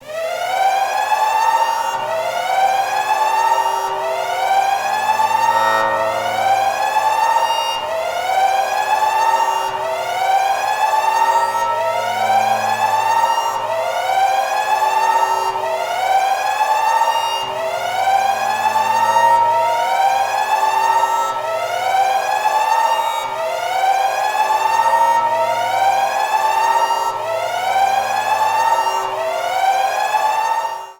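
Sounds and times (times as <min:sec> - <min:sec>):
alarm rising whoop: 0:09.2 - 0:16.2, 0:16.9 - 0:30.3.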